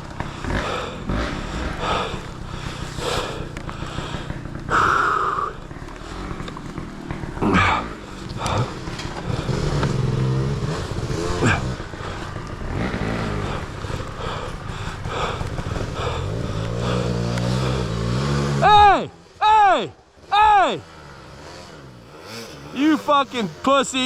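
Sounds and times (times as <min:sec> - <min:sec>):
dirt bike engine revving: 0:00.0 - 0:24.0.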